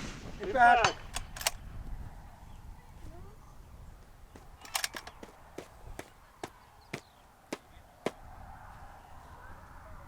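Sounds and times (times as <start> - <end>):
short sharp clicks: 4.5 - 5.3.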